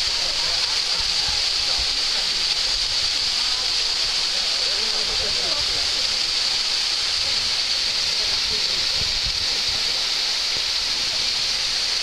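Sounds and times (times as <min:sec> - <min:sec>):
waterfall rushing: 0:00.0 - 0:12.0.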